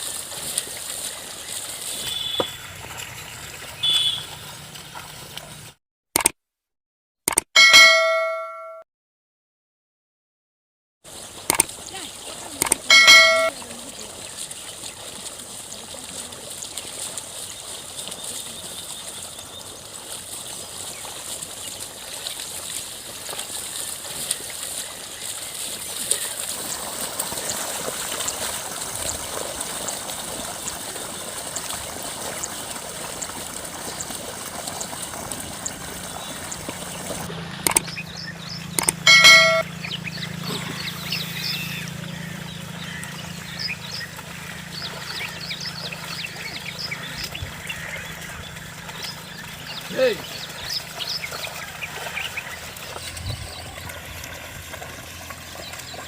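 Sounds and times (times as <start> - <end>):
mud and water sloshing: 0.0 - 5.8, 11.1 - 56.0
short high-pitched call: 39.1 - 39.6.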